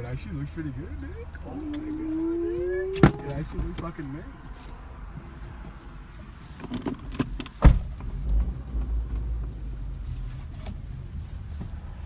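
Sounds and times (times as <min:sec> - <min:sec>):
loud thump: 0:07.6 - 0:08.1.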